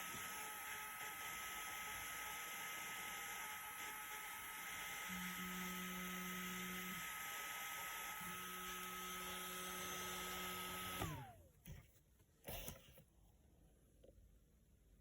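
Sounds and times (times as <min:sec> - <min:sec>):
small fan whirring: 0:00.0 - 0:11.8.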